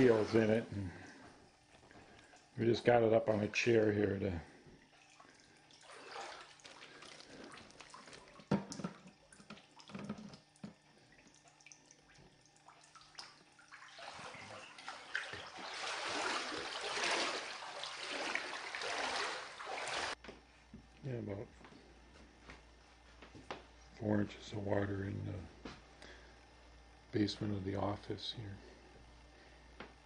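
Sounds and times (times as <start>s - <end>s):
floodwater splashing and sloshing: 4.8s - 20.2s.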